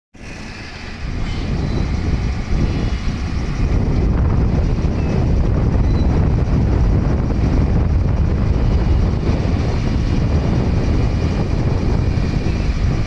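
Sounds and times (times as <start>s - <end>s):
excavator diesel engine rumbling: 0.2s - 13.0s.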